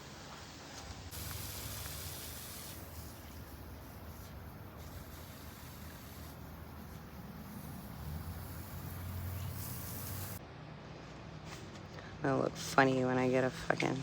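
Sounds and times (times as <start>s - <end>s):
low mechanical hum: 0.0s - 14.0s
hiss: 0.1s - 10.4s.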